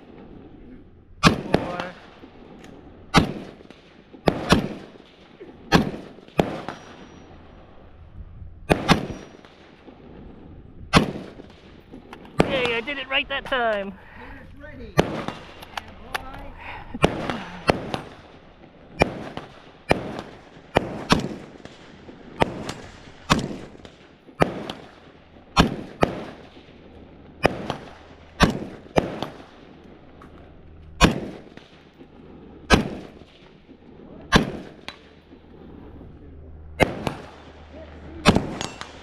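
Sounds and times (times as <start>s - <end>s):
gunshots with echo: 1.2s - 2.3s, 3.1s - 7.5s, 8.7s - 9.8s, 10.9s - 13.7s, 15.0s - 26.8s, 27.4s - 29.7s, 31.0s - 33.7s, 34.3s - 35.8s, 36.8s - 39.0s.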